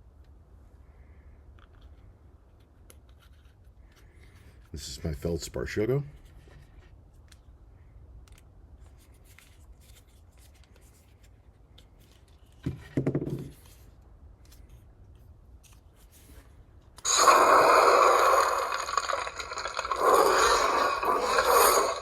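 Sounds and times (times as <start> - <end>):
lightsaber blade igniting and humming: 17.1 - 22.0.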